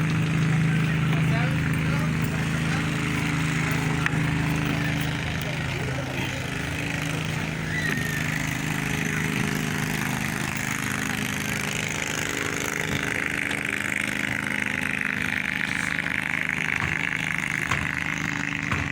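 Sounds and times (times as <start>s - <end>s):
boat engine running steadily: 0.0s - 18.9s.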